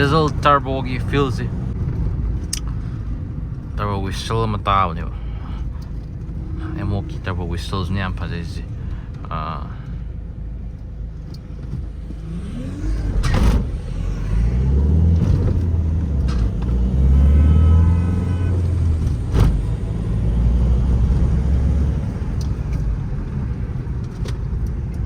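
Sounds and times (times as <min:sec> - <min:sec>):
diesel engine accelerating: 0:00.0 - 0:03.4, 0:10.4 - 0:25.0
faint turbo whistle: 0:17.1 - 0:19.3.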